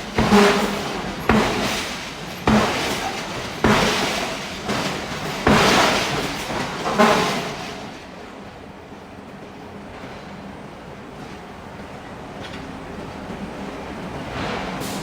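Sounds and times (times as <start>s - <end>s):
forging hammer striking steel: 0.0s - 6.4s.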